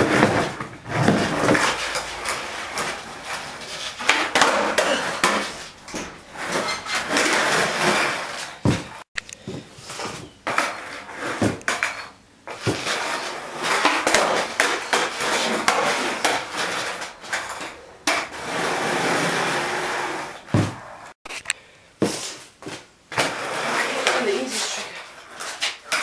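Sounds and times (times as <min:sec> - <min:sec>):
skateboard wheels rolling: 0:00.0 - 0:09.0, 0:09.8 - 0:21.2, 0:22.6 - 0:26.0
skateboard deck clacking and slapping: 0:11.4 - 0:19.4.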